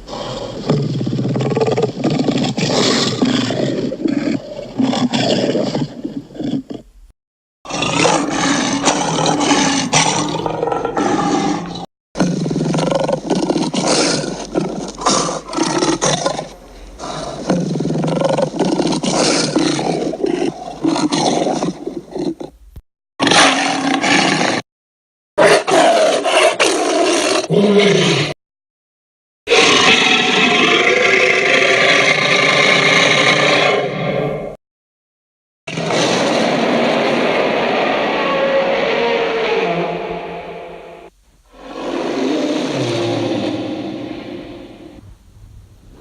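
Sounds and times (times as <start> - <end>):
deep dinosaur roar: 7.7 - 22.5, 29.5 - 34.6, 35.7 - 45.0.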